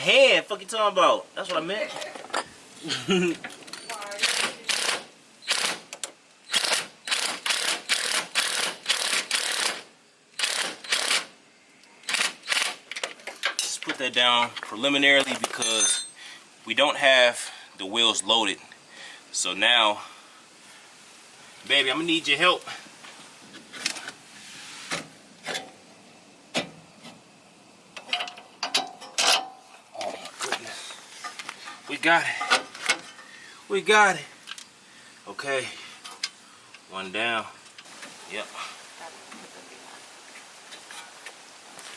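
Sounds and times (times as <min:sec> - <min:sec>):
sharp metal knocks and clanks: 0:28.0 - 0:29.6.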